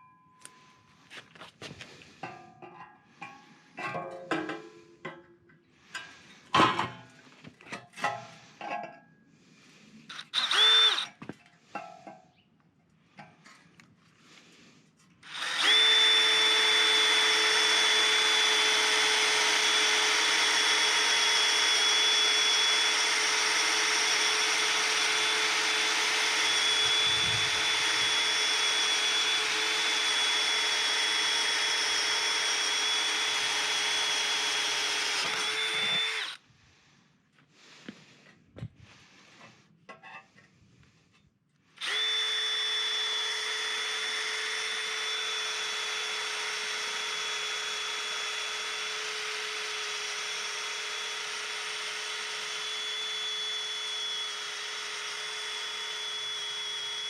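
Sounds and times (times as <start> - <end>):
small electric motor whining: 10.1 - 11.3, 15.2 - 36.4, 41.8 - 57.0.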